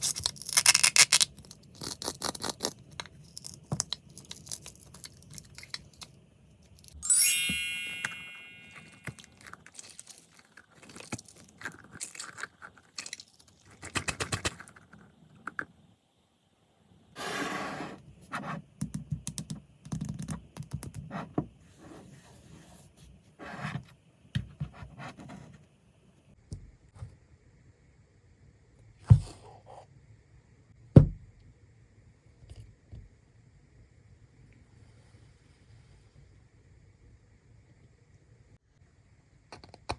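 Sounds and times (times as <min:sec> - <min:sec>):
metallic ding: 0:07.0 - 0:09.0.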